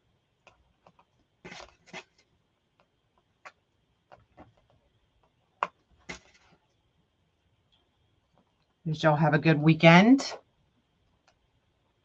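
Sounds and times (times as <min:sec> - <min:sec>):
craft materials rustling: 0:00.4 - 0:02.4, 0:05.7 - 0:06.7.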